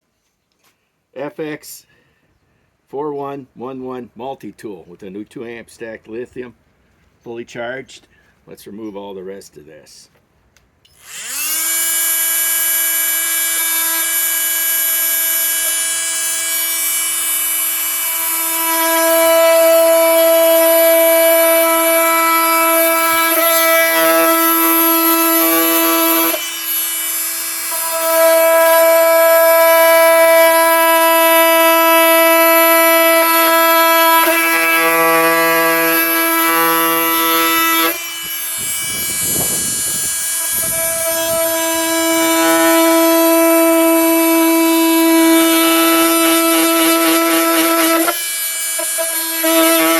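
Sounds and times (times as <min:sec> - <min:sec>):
oscillating multi-tool cutting wood: 0:10.9 - 0:49.9.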